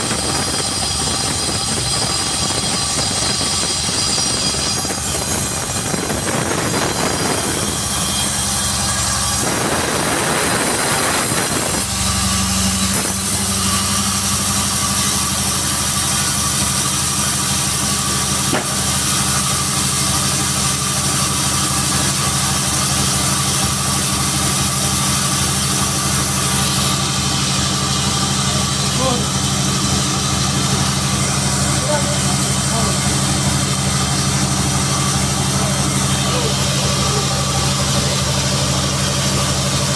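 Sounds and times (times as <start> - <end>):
sawmill engine idling: 0.0 - 39.9
burst of rushing noise: 9.3 - 11.9.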